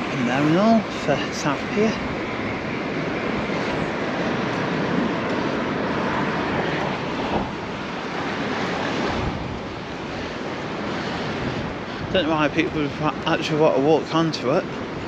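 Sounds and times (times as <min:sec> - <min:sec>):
sea surf: 0:00.0 - 0:15.0
strong wind on microphone: 0:00.0 - 0:15.0.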